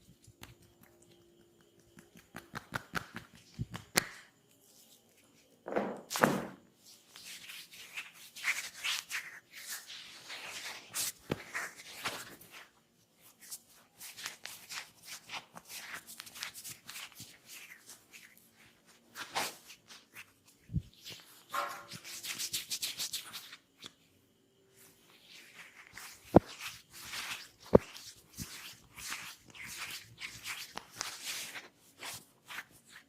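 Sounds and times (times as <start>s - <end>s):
massage taps and pats on body: 0.1s - 4.2s.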